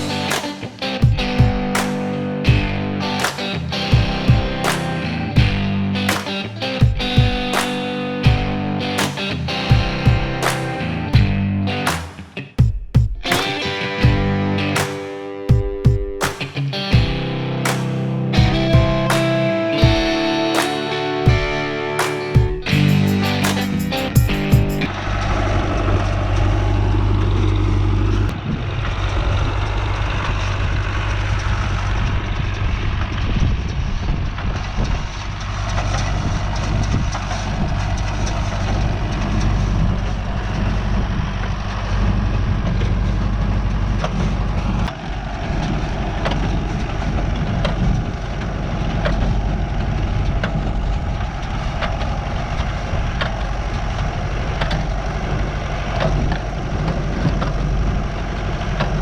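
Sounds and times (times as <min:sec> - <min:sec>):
tractor engine running: 0:22.6 - 0:59.0.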